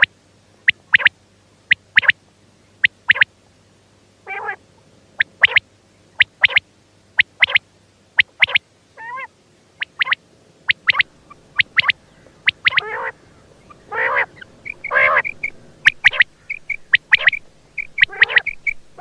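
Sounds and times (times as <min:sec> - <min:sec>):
quail calling: 0:00.0 - 0:01.1, 0:01.7 - 0:02.2, 0:02.8 - 0:03.3, 0:04.2 - 0:04.6, 0:05.2 - 0:05.6, 0:06.2 - 0:06.6, 0:07.2 - 0:07.6, 0:08.2 - 0:19.0
longer lower bird call: 0:05.2 - 0:19.0.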